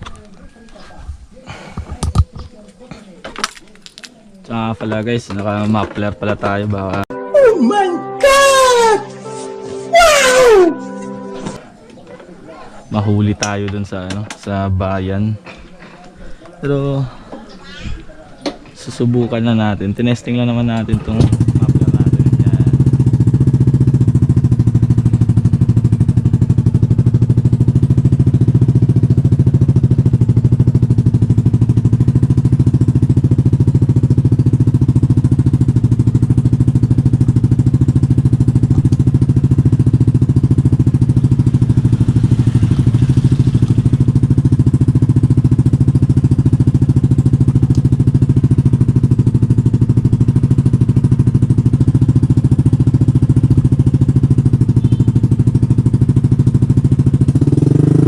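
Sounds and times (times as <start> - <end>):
motorcycle engine running: 18.9 - 58.0.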